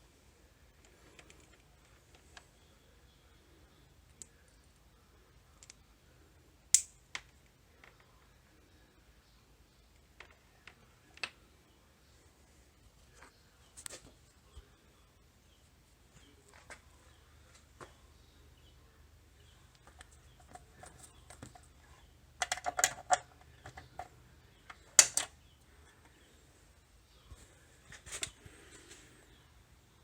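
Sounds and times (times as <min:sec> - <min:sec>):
small hard objects clicking: 0:06.7 - 0:08.2, 0:19.7 - 0:25.4.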